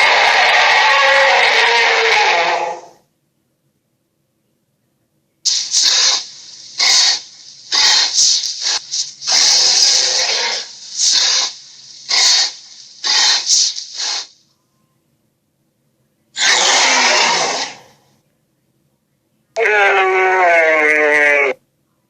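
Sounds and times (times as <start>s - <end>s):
creature hissing raspy bursts: 0.0s - 2.9s, 5.5s - 14.4s, 16.4s - 18.0s, 19.6s - 21.6s.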